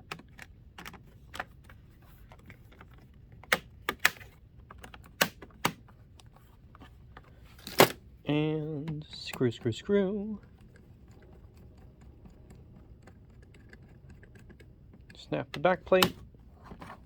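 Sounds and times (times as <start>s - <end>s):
plastic clicks and taps: 10.4s - 16.9s.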